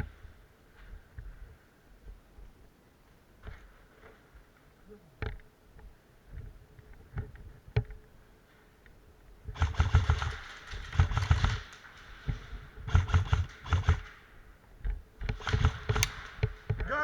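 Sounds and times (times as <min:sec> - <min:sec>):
airsoft gun firing bursts: 0:09.5 - 0:14.4, 0:15.3 - 0:17.0.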